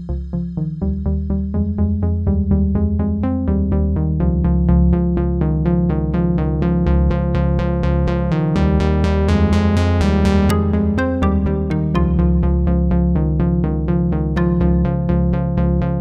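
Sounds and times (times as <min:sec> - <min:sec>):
steady bass: 0:00.0 - 0:16.0
fast synthesizer notes: 0:09.8 - 0:13.2, 0:14.3 - 0:15.5.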